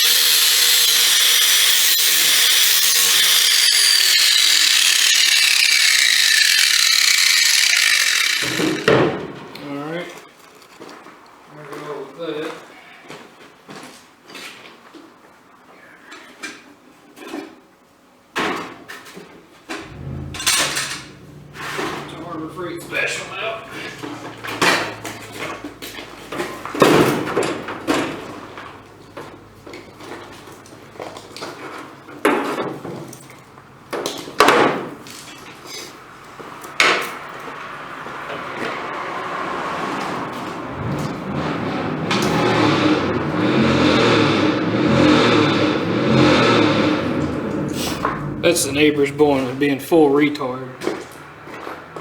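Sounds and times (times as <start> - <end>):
metal clatter: 0.0 - 9.2, 19.8 - 29.4.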